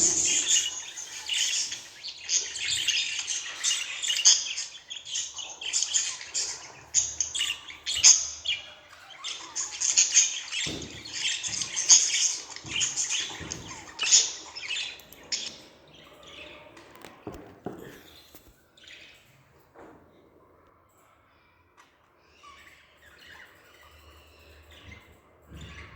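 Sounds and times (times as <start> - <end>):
budgerigars chirping: 0.0 - 17.1.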